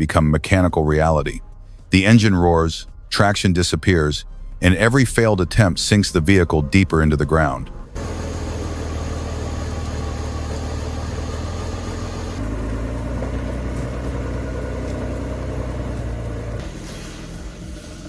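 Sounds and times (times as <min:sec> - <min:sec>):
heavy truck engine running: 0:07.9 - 0:18.0.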